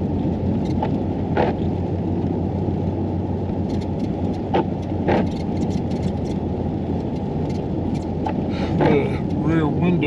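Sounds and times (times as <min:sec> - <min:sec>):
blowing wind: 0:00.0 - 0:10.0
vehicle engine rumble: 0:00.0 - 0:10.0.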